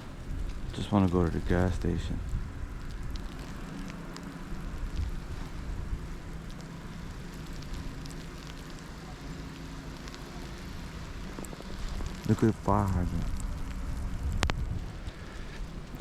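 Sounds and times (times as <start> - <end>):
wind noise on microphone: 0.0 - 6.4, 10.7 - 16.0
faint ticks: 0.1 - 16.0.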